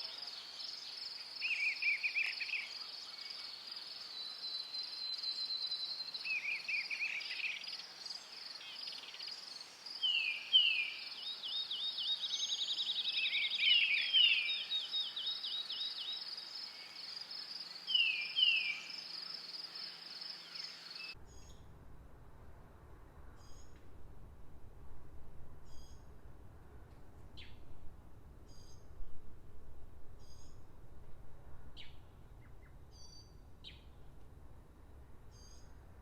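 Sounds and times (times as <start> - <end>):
cricket chorus chirping: 0.0 - 21.2
bird calls: 0.0 - 21.5.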